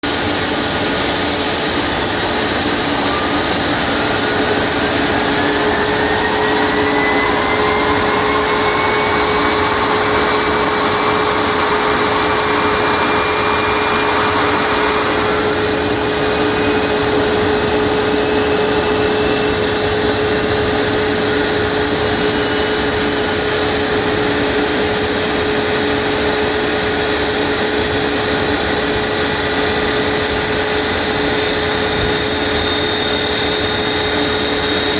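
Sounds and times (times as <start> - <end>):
jet engine rush and whine: 0.0 - 34.9
steady low hum: 0.1 - 23.6.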